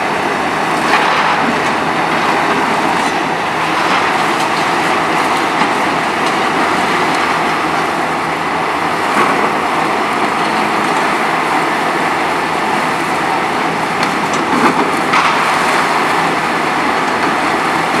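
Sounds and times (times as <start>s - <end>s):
excavator diesel engine under load: 0.0s - 18.0s
hydraulic concrete crusher: 0.0s - 18.0s.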